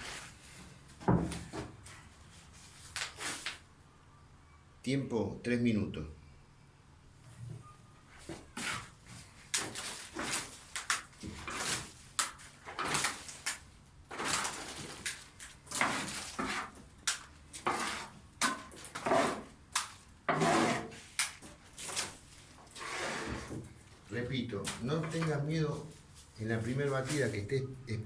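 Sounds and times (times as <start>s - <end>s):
plaster scraping and stirring in container: 8.4s - 27.5s.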